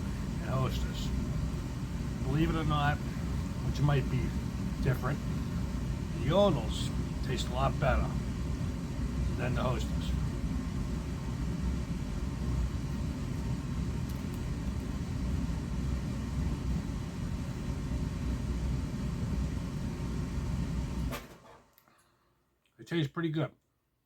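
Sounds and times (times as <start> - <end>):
steady low rumbling: 0.0 - 21.1.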